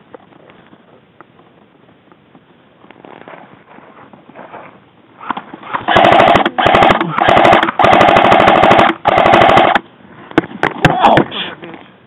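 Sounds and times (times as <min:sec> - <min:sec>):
gearbox whir: 0:05.2 - 0:09.8
rapid gun shots: 0:05.6 - 0:09.8.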